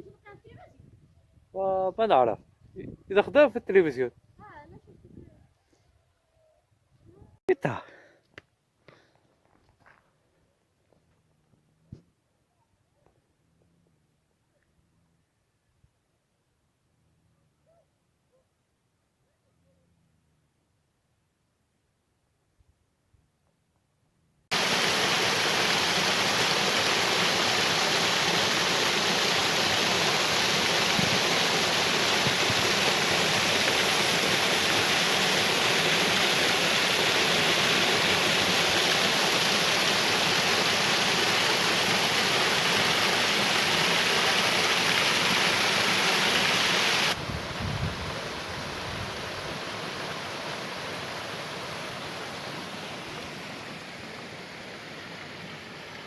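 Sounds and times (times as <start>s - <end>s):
rushing water: 24.5s - 56.0s.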